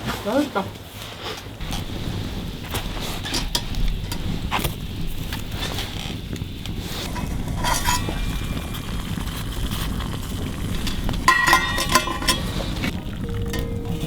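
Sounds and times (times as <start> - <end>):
steady low rumble: 1.6 - 14.0
spoon clinking on cookware: 7.0 - 14.0.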